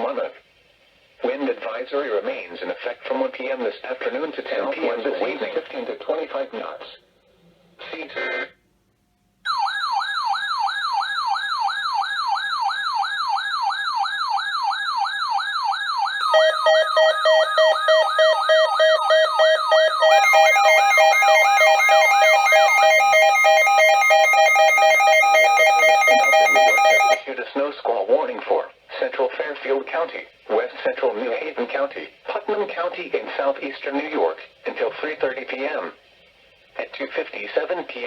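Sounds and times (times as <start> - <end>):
electronic siren yelp: 9.5 - 27.2
pulsing alert tone: 16.2 - 27.2.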